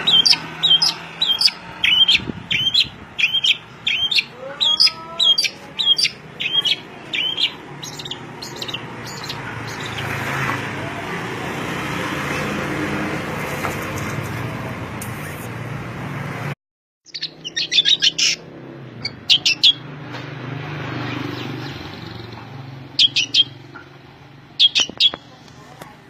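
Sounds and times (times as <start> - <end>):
bird chirping: 0.0 - 10.3, 17.1 - 19.9, 21.0 - 24.0, 24.6 - 25.3.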